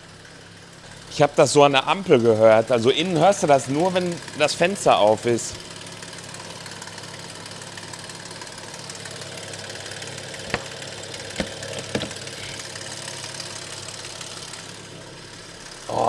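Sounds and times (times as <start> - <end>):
car engine idling with clatter: 0.0 - 16.0
sharp engine knocks: 10.2 - 13.4.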